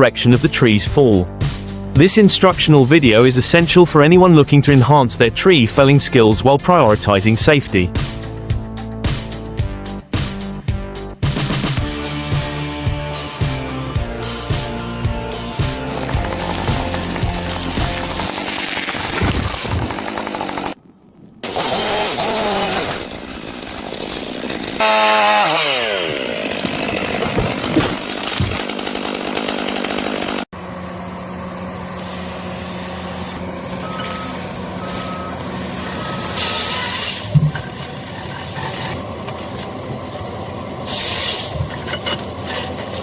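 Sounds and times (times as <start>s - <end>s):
chainsaw engine running: 11.4s - 20.8s, 21.4s - 37.0s
heavy machine engine running: 11.8s - 20.8s, 26.5s - 43.0s
short high beeps: 33.8s - 36.8s.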